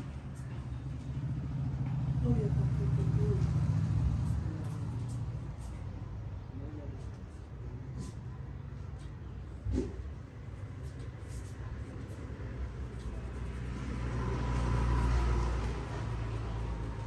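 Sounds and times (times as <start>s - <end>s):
vehicle rumbling by: 0.0s - 6.2s, 12.3s - 17.0s.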